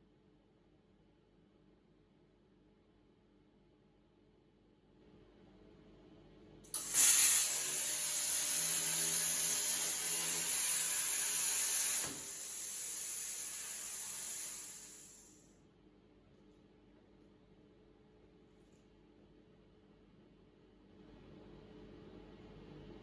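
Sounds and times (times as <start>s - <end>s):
air hiss: 6.8s - 15.4s
plasma cutter torch hissing: 6.8s - 15.4s.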